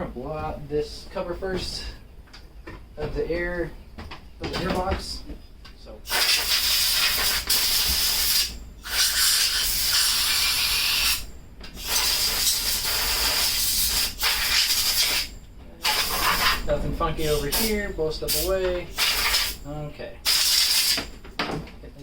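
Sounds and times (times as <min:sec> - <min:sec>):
compressed air hissing: 0:06.0 - 0:21.2.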